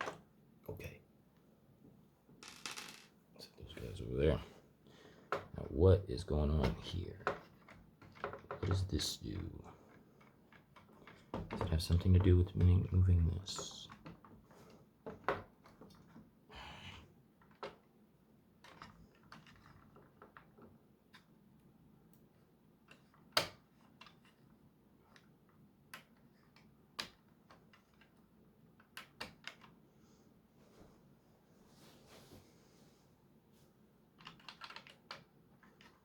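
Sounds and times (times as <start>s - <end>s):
plastic parts clicking and knocking: 6.6s - 16.2s, 17.4s - 17.9s, 18.6s - 21.7s, 22.8s - 29.8s, 34.1s - 36.0s.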